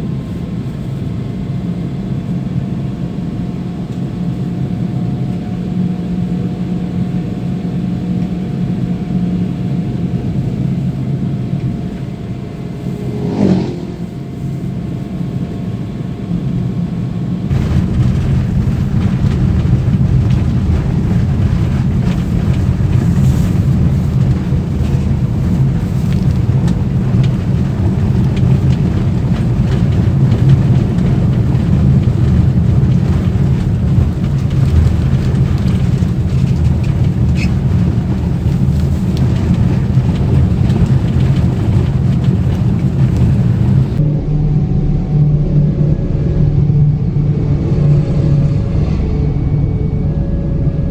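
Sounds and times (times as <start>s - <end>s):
rough tyre and road rumble: 0.0s - 44.2s
car engine and tyre hum: 0.0s - 50.9s
gliding whoosh: 12.6s - 14.5s.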